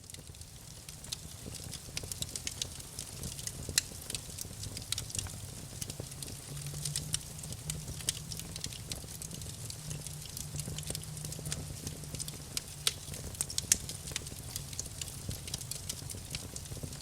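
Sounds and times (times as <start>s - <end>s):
campfire wood crackling and popping: 0.0s - 17.0s
steady low rumble: 4.0s - 17.0s.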